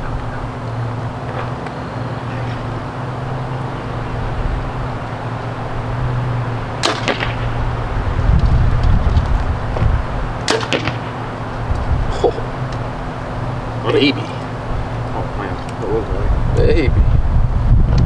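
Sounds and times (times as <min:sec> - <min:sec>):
wind rumbling on microphone: 0:00.0 - 0:18.0
bow shot snap and knock: 0:06.8 - 0:07.5.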